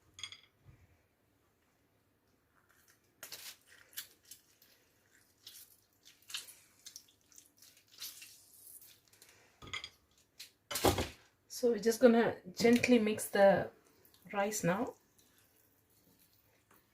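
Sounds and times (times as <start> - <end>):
faint drips: 13.8 - 16.9.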